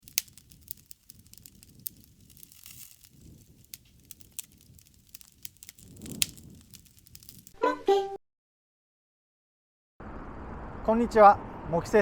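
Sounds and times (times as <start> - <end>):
burning leaves crackling: 0.0 - 7.6.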